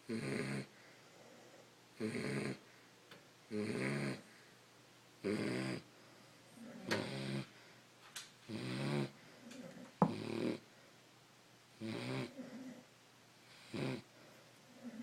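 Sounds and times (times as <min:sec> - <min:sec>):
dog snoring: 0:00.0 - 0:02.7, 0:03.5 - 0:04.4, 0:05.2 - 0:05.9, 0:06.6 - 0:07.6, 0:08.5 - 0:10.6, 0:11.8 - 0:14.1.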